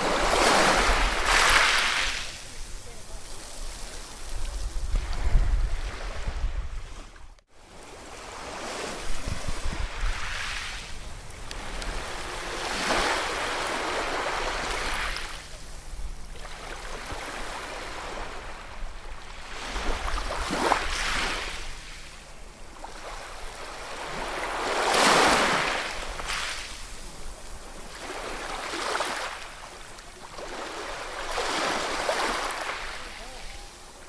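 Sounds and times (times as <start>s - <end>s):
ocean waves breaking: 0.0s - 34.0s.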